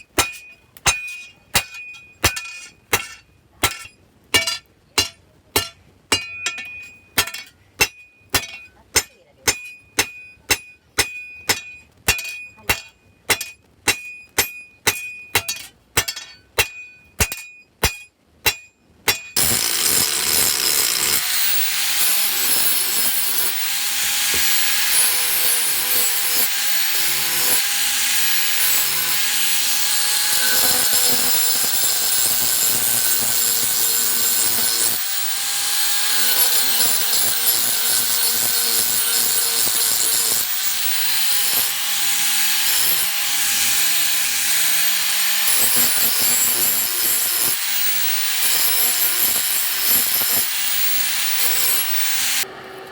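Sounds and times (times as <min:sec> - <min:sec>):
hammer striking steel: 0:00.0 - 0:35.4
power tool grinding steel: 0:19.4 - 0:52.9.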